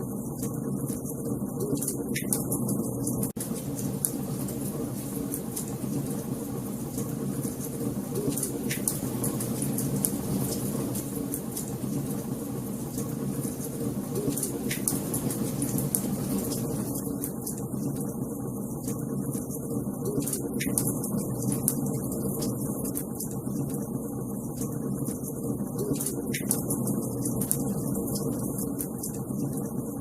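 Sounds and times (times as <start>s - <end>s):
wood fire crackling: 2.4s - 18.1s.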